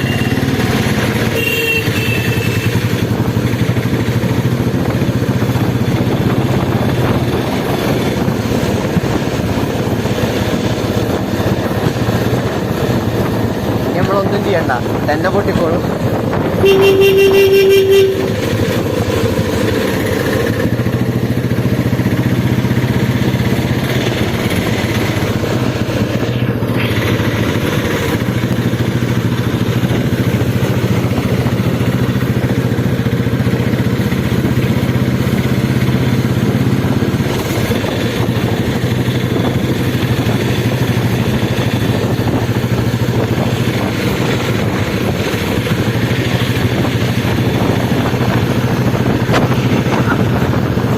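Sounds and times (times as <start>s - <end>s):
vehicle horn: 0.0s - 3.1s, 16.5s - 18.9s
motorcycle engine running: 0.0s - 50.9s.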